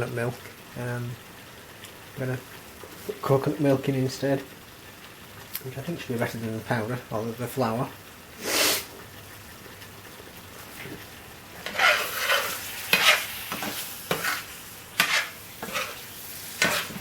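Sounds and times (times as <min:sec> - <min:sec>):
sauce sizzling in a hot pan: 0:00.0 - 0:17.0
spoon scraping and stirring: 0:11.6 - 0:17.0.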